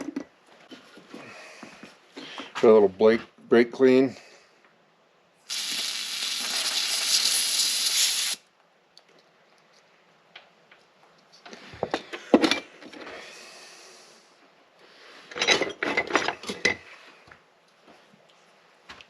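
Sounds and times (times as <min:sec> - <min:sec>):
aerosol spray hissing: 0:05.5 - 0:08.4.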